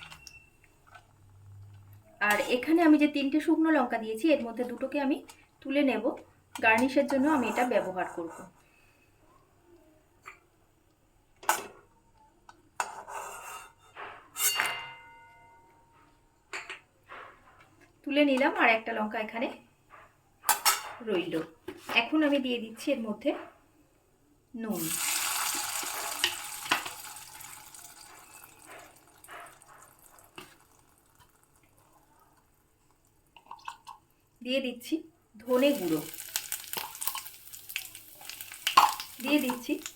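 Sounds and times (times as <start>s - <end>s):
metal spoon clinking on cookware: 14.4s - 15.4s, 38.6s - 39.6s
oil sizzling with spices: 24.7s - 33.5s, 35.4s - 39.9s.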